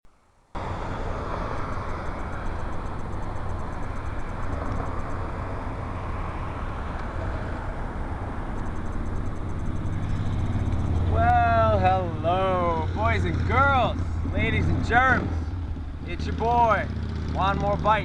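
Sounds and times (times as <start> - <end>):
moving vehicle rumble and hiss: 0.6 - 18.0.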